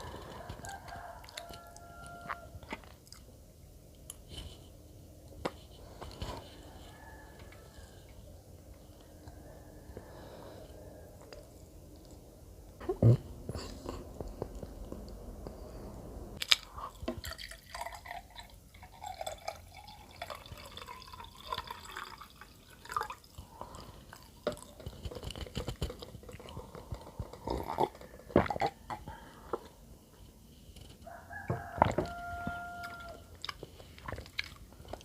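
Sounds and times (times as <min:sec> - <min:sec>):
person chewing bread: 0:00.0 - 0:03.4, 0:13.0 - 0:15.3, 0:30.9 - 0:35.0.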